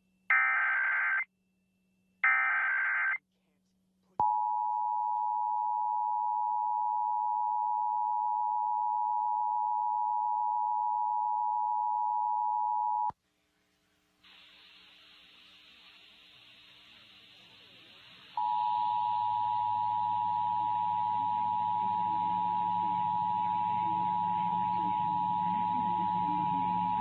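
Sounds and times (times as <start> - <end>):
two-tone alarm tone: 0.3 - 1.2, 2.2 - 3.2, 18.4 - 27.0
faint hiss: 13.1 - 19.0.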